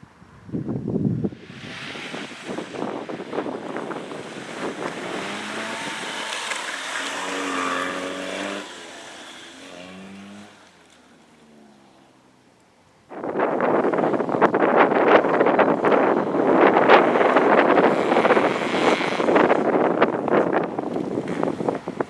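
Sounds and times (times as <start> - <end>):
car engine revving past: 1.4 - 12.4.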